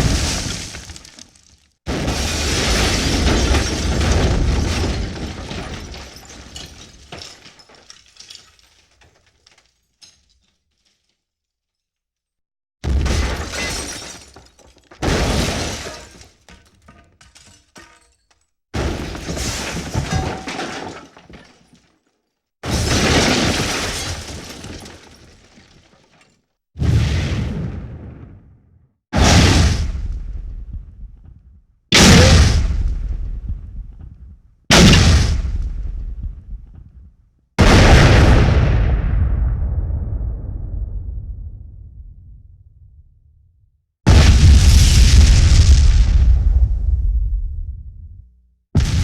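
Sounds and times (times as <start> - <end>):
explosions with shattering tail: 0.0 - 7.4, 22.6 - 25.5, 26.8 - 31.2, 31.9 - 37.0, 37.6 - 43.0, 44.1 - 48.2, 48.8 - 49.0.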